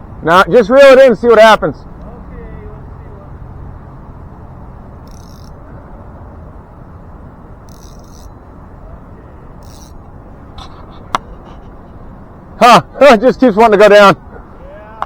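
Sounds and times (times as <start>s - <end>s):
low outdoor rumble: 0.0s - 15.0s.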